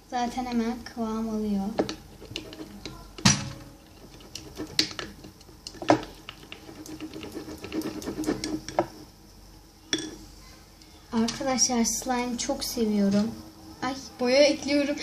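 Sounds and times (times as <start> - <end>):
spoon stirring slime: 1.7 - 9.0.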